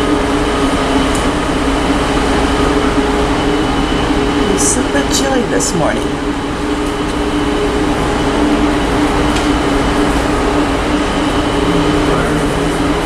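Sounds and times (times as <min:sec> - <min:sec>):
ventilation fans droning: 0:00.0 - 0:13.0.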